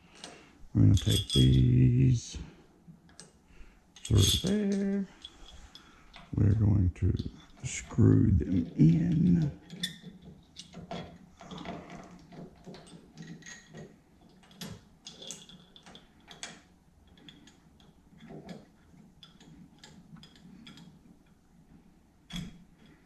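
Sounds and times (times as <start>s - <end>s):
metal bolts clicking and tapping: 8.6s - 21.4s.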